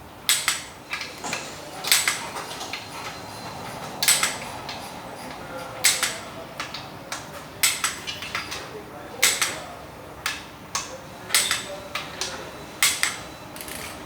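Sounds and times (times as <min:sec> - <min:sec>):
torque wrench ratcheting: 0:12.8 - 0:14.0.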